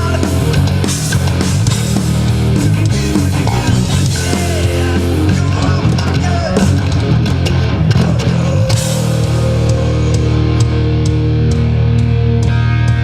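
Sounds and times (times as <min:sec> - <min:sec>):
heavy metal band playing: 0:00.0 - 0:13.0
lead guitar bending notes: 0:00.0 - 0:13.0.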